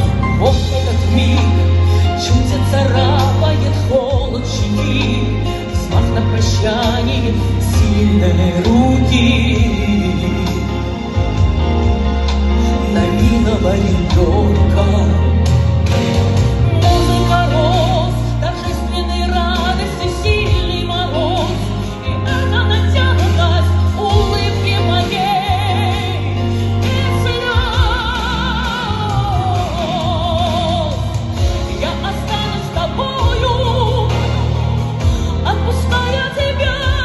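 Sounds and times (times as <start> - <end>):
woman singing with vibrato: 0.0 - 11.4, 12.7 - 15.6, 16.4 - 37.0
instrumental music with heavy bass: 0.0 - 37.0.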